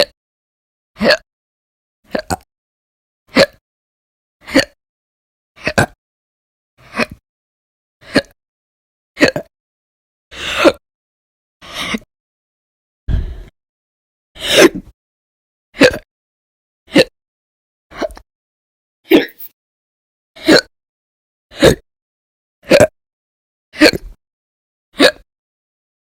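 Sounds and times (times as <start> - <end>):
person hiccuping: 1.0 - 1.2, 3.3 - 3.6, 4.4 - 4.8, 5.6 - 6.0, 9.2 - 9.5, 15.8 - 16.1, 16.9 - 17.2, 19.1 - 19.5, 20.4 - 20.7, 23.8 - 24.2, 25.0 - 25.3.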